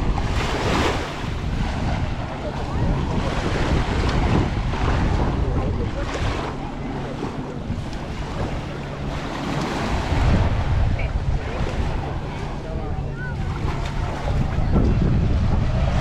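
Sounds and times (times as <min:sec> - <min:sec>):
surf washing on beach: 0:00.0 - 0:16.0
wind buffeting microphone: 0:00.0 - 0:16.0.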